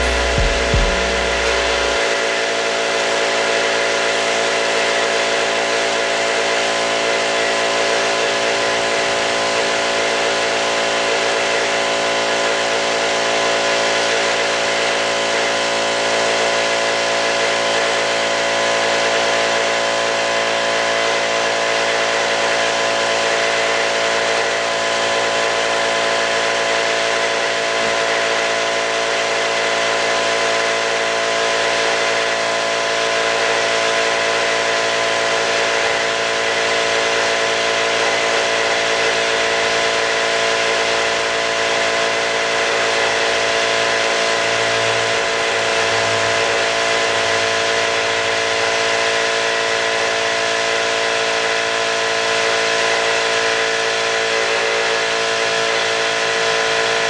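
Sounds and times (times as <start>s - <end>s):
machine humming steadily: 0.0s - 3.2s.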